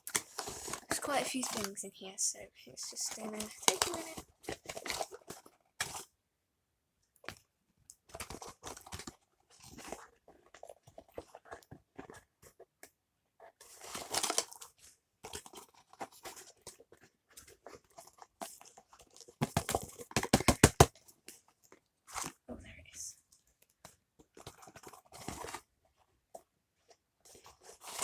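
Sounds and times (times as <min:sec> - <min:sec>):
packaging crinkling and tearing: 0:02.9 - 0:05.3, 0:13.8 - 0:14.7.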